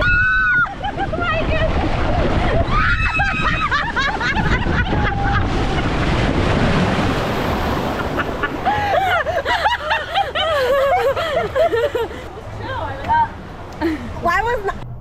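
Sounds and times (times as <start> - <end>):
wind buffeting microphone: 0.0 - 9.4
rushing water: 0.0 - 14.7.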